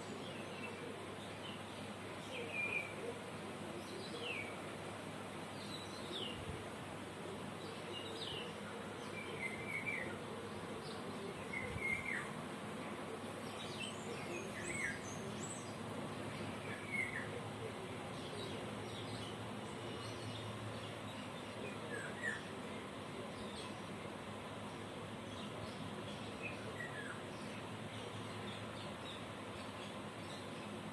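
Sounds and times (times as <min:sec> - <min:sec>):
steady background hiss: 0:00.0 - 0:30.9
birds chirping: 0:07.1 - 0:30.9.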